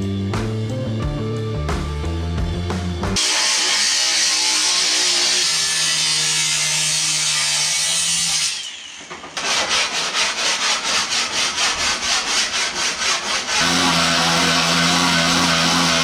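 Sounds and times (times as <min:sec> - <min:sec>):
rock music with guitar: 0:00.0 - 0:03.2
hand tool scraping: 0:08.1 - 0:16.0.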